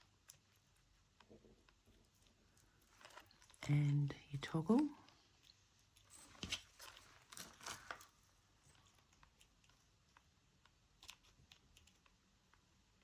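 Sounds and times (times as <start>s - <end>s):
jewellery parts clicking and rustling: 2.0s - 3.6s.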